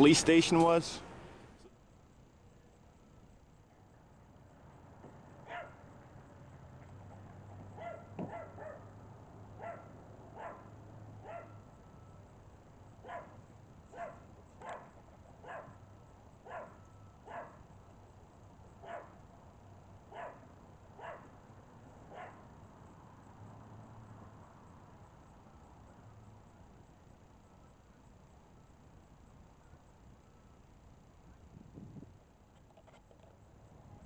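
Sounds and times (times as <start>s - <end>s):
dog barking faintly: 5.4s - 5.8s, 9.6s - 11.6s, 13.0s - 15.8s, 16.4s - 17.6s, 18.8s - 19.2s, 20.1s - 20.4s.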